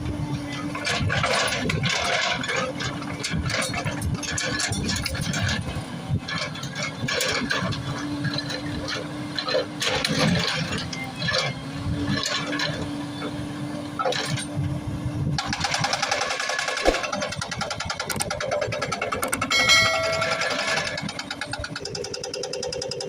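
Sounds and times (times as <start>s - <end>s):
diesel engine running: 0.0s - 23.0s
clanks of rock and metal: 0.8s - 5.7s, 15.4s - 23.0s
fast even rattle: 15.4s - 23.0s.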